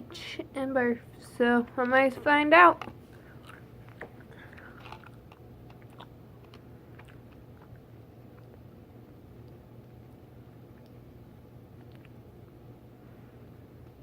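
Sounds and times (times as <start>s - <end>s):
low steady hum: 0.0s - 14.0s
person chewing: 2.8s - 8.7s.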